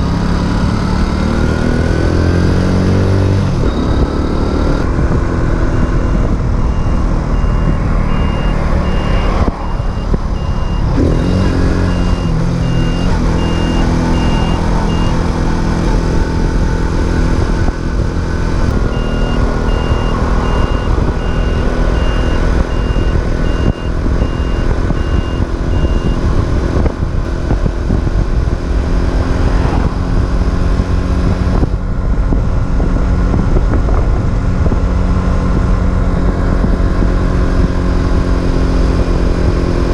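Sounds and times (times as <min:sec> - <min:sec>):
high electronic beeps: 0:03.4 - 0:04.8, 0:06.6 - 0:15.3, 0:18.7 - 0:26.2.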